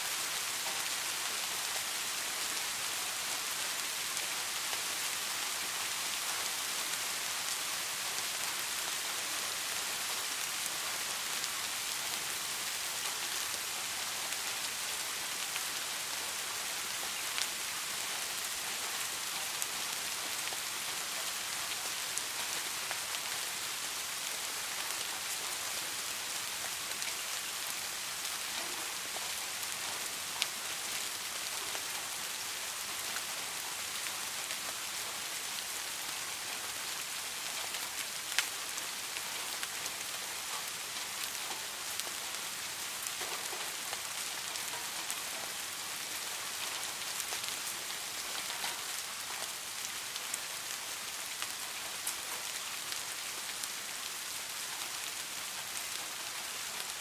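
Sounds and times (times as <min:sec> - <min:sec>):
steady rain hiss: 0:00.0 - 0:57.0
raindrop ticks: 0:28.5 - 0:31.7, 0:48.1 - 0:49.9.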